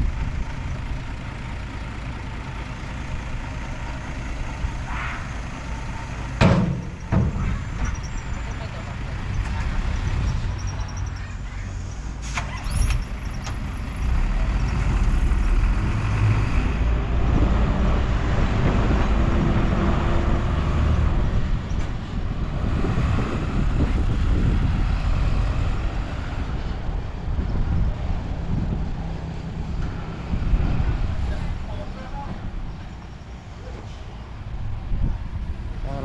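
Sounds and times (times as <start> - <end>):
diesel machinery rumbling: 0.0 - 36.0.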